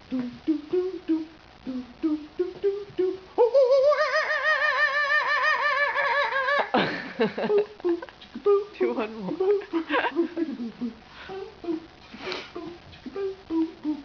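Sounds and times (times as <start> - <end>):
man imitating monkey calls: 3.4 - 6.8.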